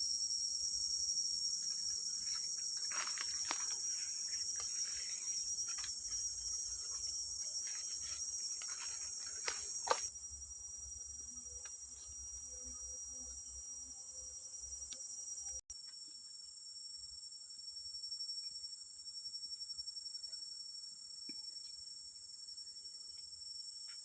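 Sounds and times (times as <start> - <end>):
rainforest insects chorus: 0.0 - 15.6
rustling and crackling: 1.7 - 10.1
sharp snaps: 7.6 - 10.1.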